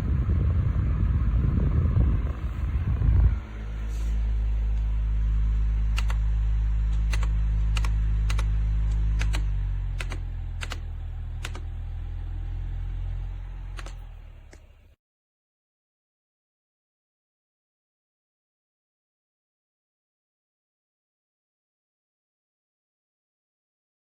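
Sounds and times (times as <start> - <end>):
fan motor hum: 0.0 - 15.0
sharp clicks: 5.9 - 6.2, 6.9 - 11.8, 13.6 - 14.7.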